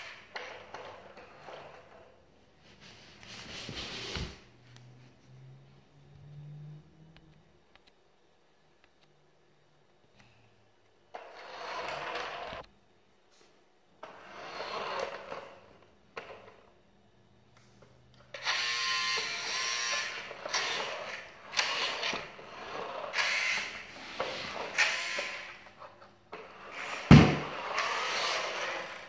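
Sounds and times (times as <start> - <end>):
toy car motor whirring: 11.3 - 12.6, 14.1 - 15.5, 18.3 - 25.8, 26.5 - 29.0.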